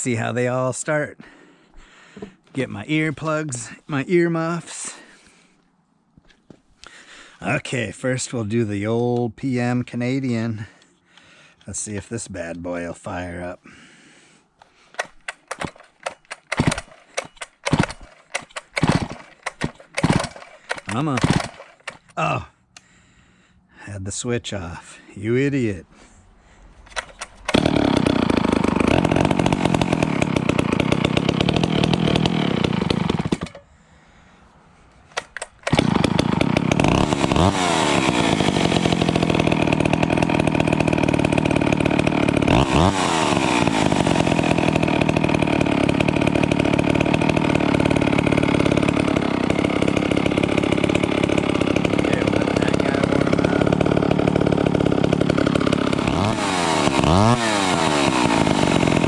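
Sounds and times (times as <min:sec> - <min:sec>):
starter cord pulled: 0:14.6 - 0:22.9, 0:26.8 - 0:33.7, 0:35.0 - 0:59.0
chainsaw engine running and revving: 0:15.0 - 0:22.1, 0:26.9 - 0:33.6, 0:35.2 - 0:59.0.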